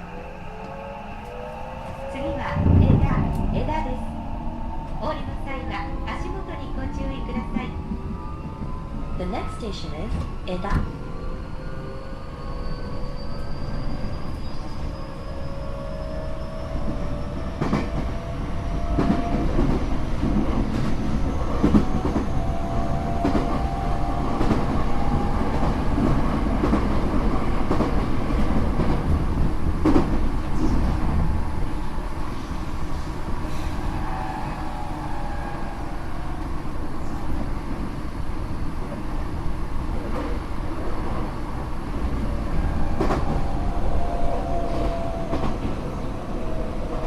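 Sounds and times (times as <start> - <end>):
train running rumble: 0.0 - 11.0.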